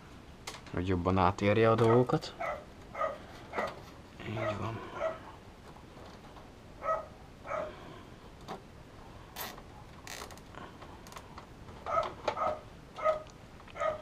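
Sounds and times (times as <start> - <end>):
dog yipping: 1.9 - 3.8, 6.8 - 7.7, 11.9 - 14.0.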